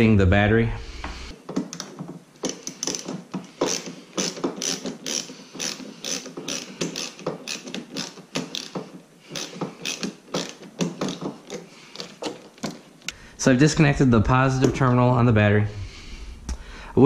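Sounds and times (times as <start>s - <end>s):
socket ratchet clicking: 1.7s - 12.4s.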